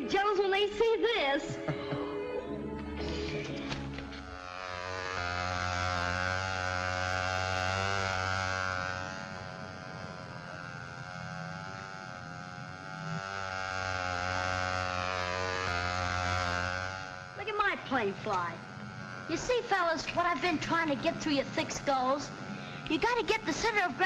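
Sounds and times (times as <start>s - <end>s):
model airplane engine buzzing: 0.0s - 24.0s.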